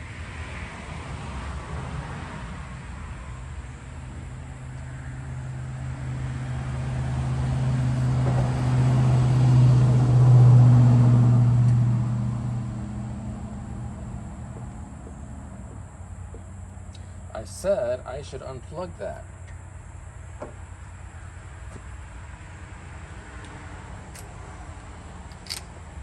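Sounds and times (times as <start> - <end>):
vehicle engine passing by: 0.0 - 17.5.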